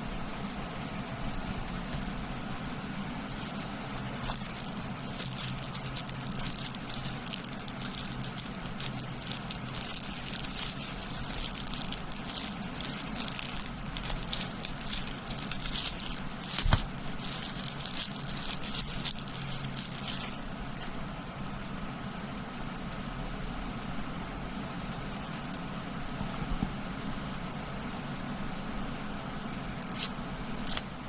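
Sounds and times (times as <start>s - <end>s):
steady low hum: 0.0s - 31.0s
packaging rustling and crinkling: 3.3s - 20.9s.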